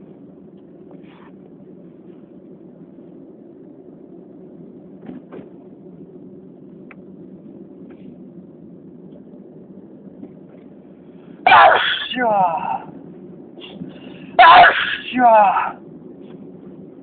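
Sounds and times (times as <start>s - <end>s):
low background hum: 0.0s - 17.0s.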